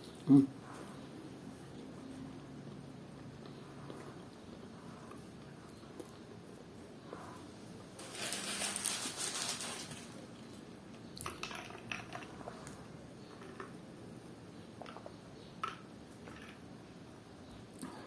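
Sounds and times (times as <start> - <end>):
crunchy food crackling: 8.0 - 12.8.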